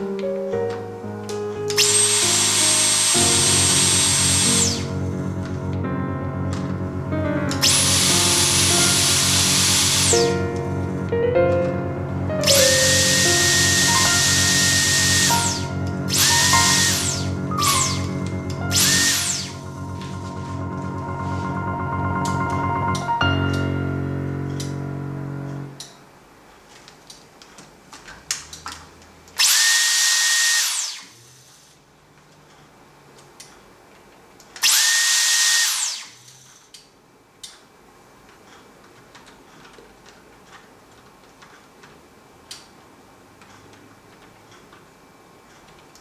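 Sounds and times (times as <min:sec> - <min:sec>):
music: 0:00.0 - 0:25.9
vacuum cleaner motor whine: 0:01.8 - 0:05.8, 0:07.6 - 0:11.1, 0:12.1 - 0:21.7, 0:29.4 - 0:31.7, 0:34.6 - 0:36.3.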